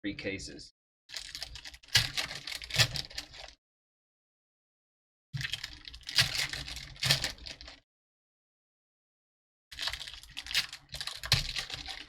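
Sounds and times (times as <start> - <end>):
card wrappers crinkling: 1.1 - 3.6, 5.4 - 7.8, 9.8 - 12.0.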